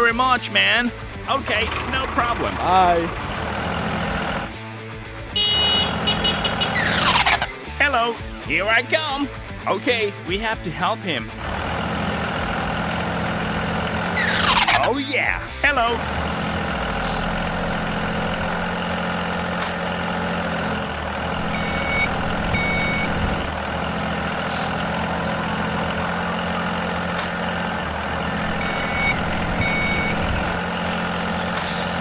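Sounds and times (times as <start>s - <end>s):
truck engine running: 0.0s - 32.0s
reversing beeper: 21.3s - 26.8s, 28.3s - 32.0s.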